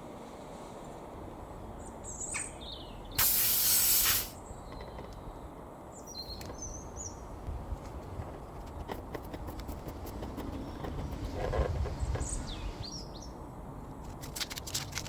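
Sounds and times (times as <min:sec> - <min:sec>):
birds chirping: 0:01.2 - 0:13.5
loud hiss: 0:03.1 - 0:04.5.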